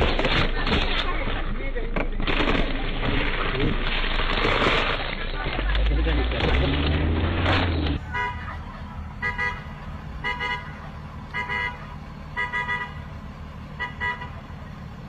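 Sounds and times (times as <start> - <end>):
low engine rumble: 0.0 - 15.0
vehicle horn beeping: 8.0 - 14.7.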